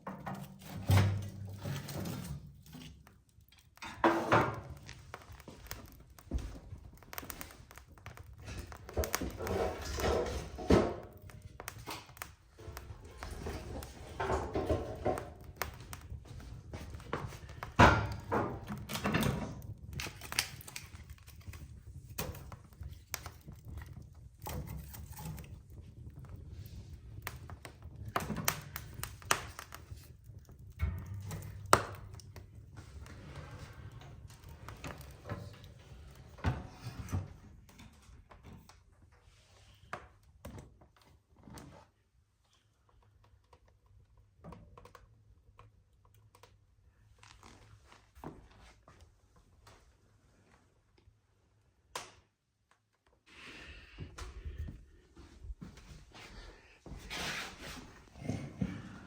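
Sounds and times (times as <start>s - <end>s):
objects knocking and clattering: 0.0s - 38.0s.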